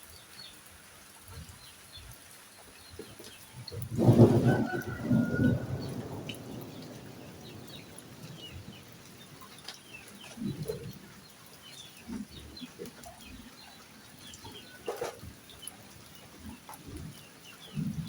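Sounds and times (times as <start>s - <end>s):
small birds chirping: 0.0s - 4.2s, 5.8s - 18.0s
poultry clucking: 12.0s - 15.8s.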